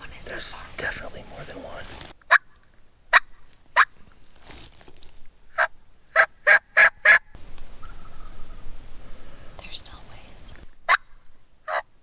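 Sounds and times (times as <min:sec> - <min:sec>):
turkey yelps: 0:05.6 - 0:08.5, 0:10.9 - 0:11.9.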